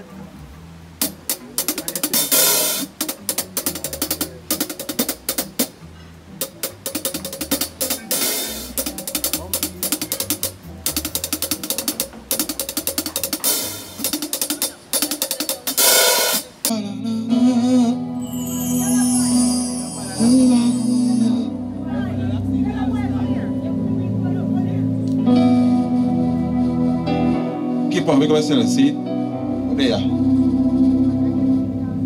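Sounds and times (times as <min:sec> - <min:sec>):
bass line: 0:00.0 - 0:32.0
drum kit groove: 0:00.9 - 0:16.8, 0:18.2 - 0:21.6.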